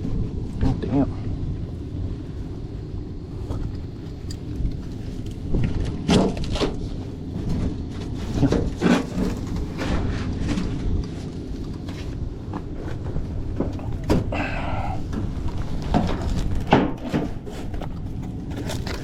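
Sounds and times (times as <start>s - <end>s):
steady low rumble: 0.0s - 19.0s
duct scraping and rustling knocks: 4.8s - 14.3s, 15.0s - 19.0s.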